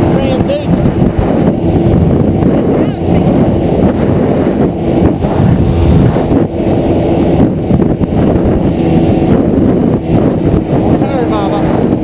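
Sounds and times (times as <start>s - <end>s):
motorboat engine running: 0.0s - 12.0s
wind buffeting microphone: 0.0s - 12.0s.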